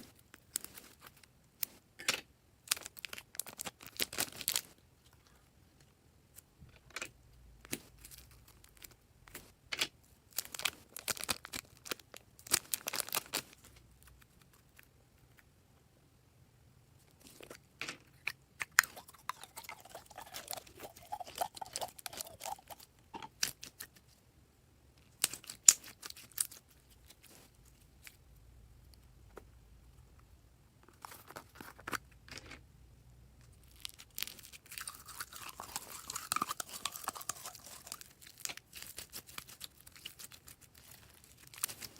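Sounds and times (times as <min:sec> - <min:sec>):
slime squelching: 0:18.6 - 0:24.0, 0:33.6 - 0:41.9
slime crackling and popping: 0:33.6 - 0:41.9.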